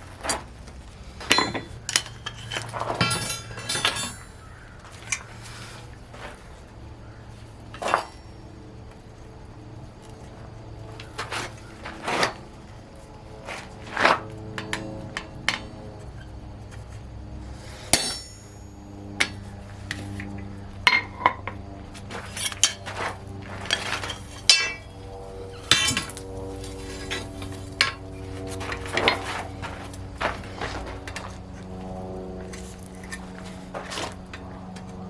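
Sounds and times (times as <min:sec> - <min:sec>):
hammer striking steel: 0:01.3 - 0:02.1, 0:03.0 - 0:04.4, 0:17.8 - 0:19.4, 0:20.9 - 0:21.4, 0:22.3 - 0:22.9, 0:23.7 - 0:24.9, 0:25.7 - 0:26.2, 0:27.8 - 0:28.0.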